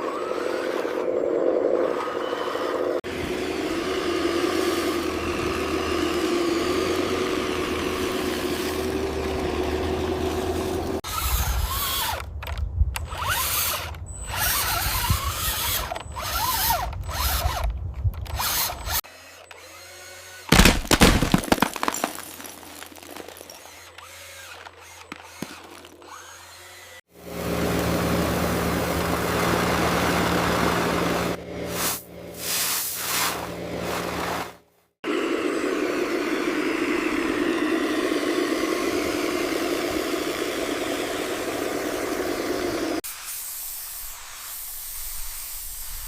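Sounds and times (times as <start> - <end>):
small electric motors whining: 0.0 - 20.6, 22.4 - 31.4, 35.0 - 46.0.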